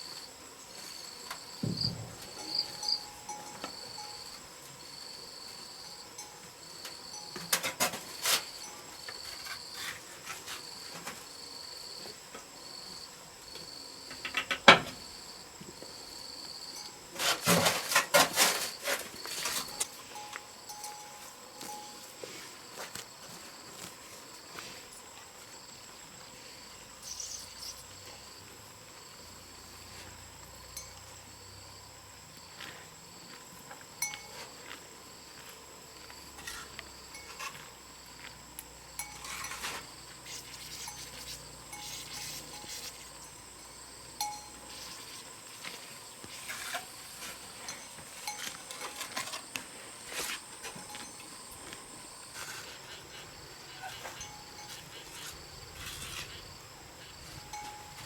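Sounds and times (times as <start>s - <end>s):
insects droning: 0.0s - 58.0s
light clinks and knocks: 36.4s - 37.7s, 39.0s - 44.9s, 46.5s - 56.4s.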